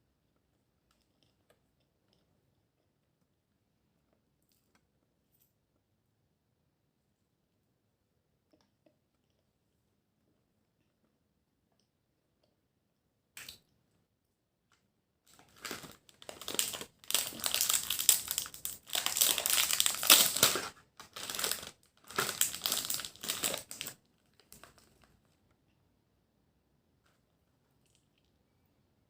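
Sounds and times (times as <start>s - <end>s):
plastic packaging crinkling: 15.3s - 25.1s.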